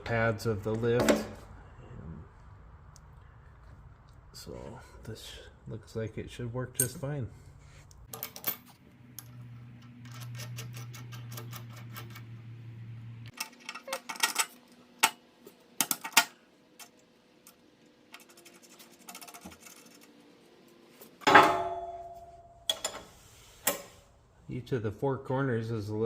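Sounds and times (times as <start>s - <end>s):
low hum: 1.4s - 13.3s, 21.3s - 23.0s
loud ringing metal clang: 21.2s - 22.7s.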